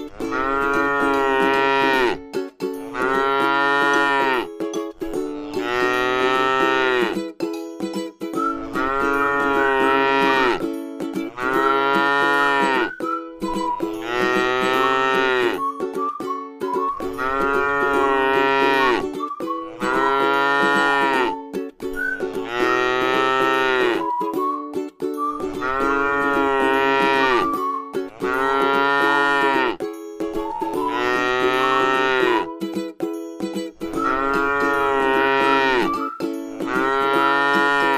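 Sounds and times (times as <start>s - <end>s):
cow mooing: 0.1s - 2.2s, 2.9s - 4.5s, 5.4s - 7.2s, 8.7s - 10.6s, 11.4s - 12.9s, 14.0s - 15.6s, 17.2s - 19.0s, 19.7s - 21.4s, 22.4s - 24.0s, 25.6s - 27.5s, 28.2s - 29.8s, 30.8s - 32.5s, 34.0s - 35.9s, 36.7s - 37.9s.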